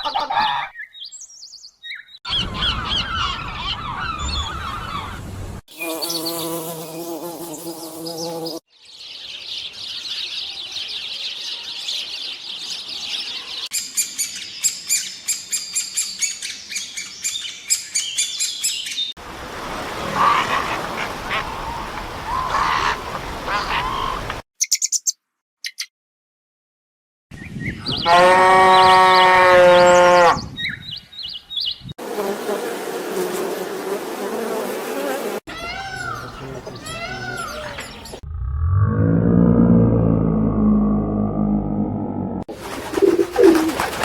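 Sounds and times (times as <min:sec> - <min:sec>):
duck-like quacking: 0:00.0 - 0:00.7, 0:22.4 - 0:24.2
bird pitched call: 0:20.1 - 0:25.9
dense high bird chirping: 0:20.3 - 0:25.9, 0:35.6 - 0:38.3.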